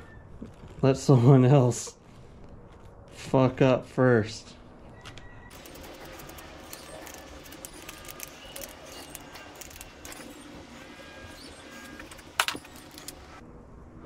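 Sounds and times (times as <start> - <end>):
metal parts clicking and clinking: 5.5 - 10.6, 11.8 - 13.4.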